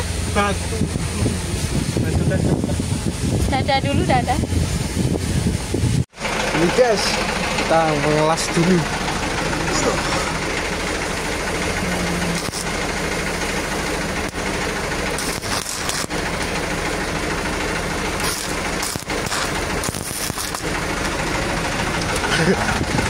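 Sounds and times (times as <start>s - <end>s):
engine running: 0.0s - 23.0s
arc welding crackling: 9.0s - 22.9s.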